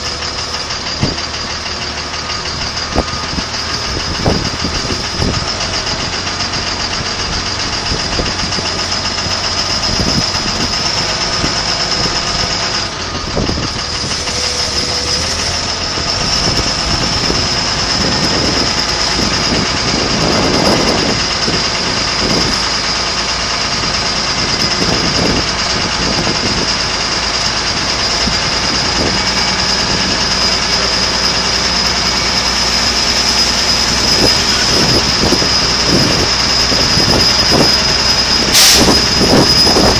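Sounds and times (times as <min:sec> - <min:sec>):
heavy engine idling: 0:00.0 - 0:39.9
high-pitched whine: 0:24.4 - 0:39.9.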